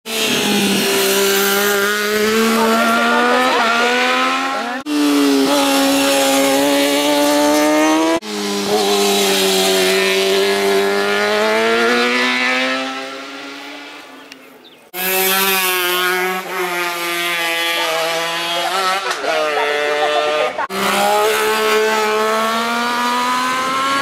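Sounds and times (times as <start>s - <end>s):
racing motorcycle engines revving: 0.1s - 24.0s.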